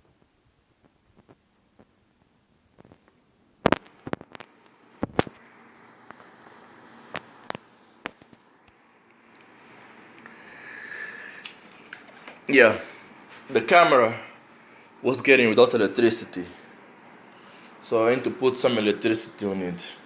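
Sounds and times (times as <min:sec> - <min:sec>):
faint hiss: 0:09.6 - 0:20.0.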